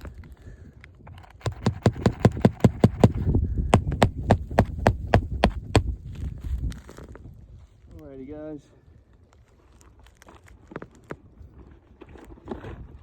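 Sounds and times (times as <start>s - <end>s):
hammer striking roofing nails: 1.4s - 5.9s.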